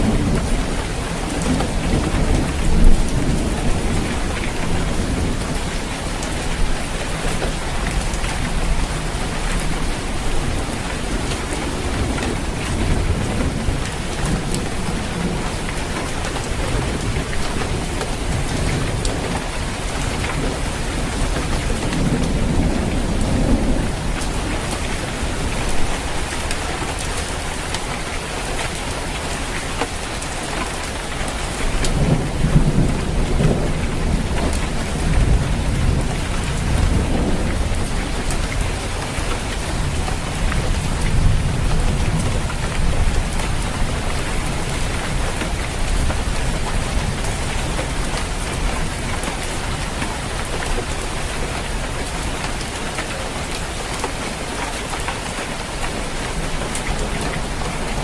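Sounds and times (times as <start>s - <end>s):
rain falling on a roof: 0.0s - 58.0s
thunder rumbling: 0.0s - 58.0s.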